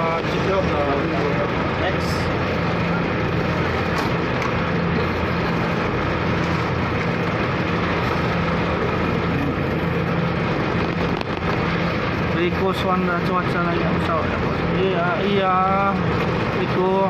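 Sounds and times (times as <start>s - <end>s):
ship engine drone: 0.0s - 17.0s.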